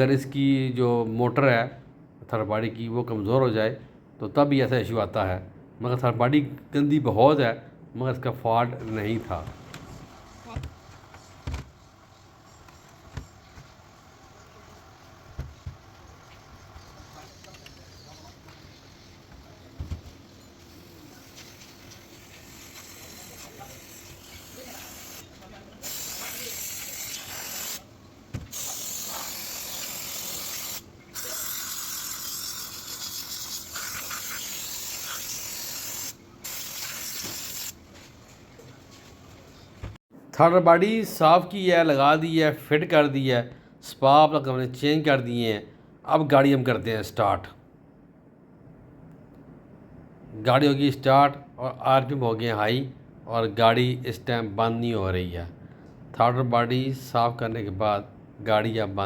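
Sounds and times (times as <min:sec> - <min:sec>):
aerosol spray hissing: 0:22.1 - 0:25.2, 0:25.8 - 0:27.9, 0:28.5 - 0:37.8.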